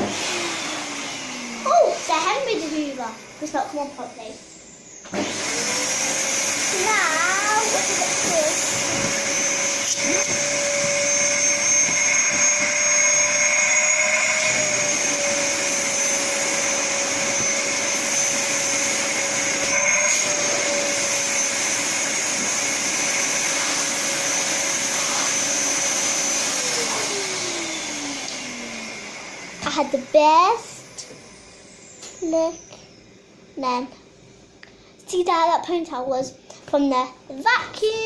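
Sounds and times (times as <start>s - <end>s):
motor spinning down: 0.0s - 30.1s
vacuum cleaner whining: 0.0s - 34.5s.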